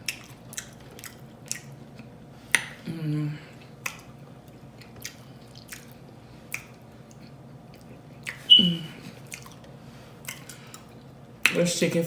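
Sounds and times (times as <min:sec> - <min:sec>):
chewing and lip-smacking: 0:00.0 - 0:02.8, 0:03.5 - 0:11.6
short falling voiced sound: 0:08.5 - 0:09.0.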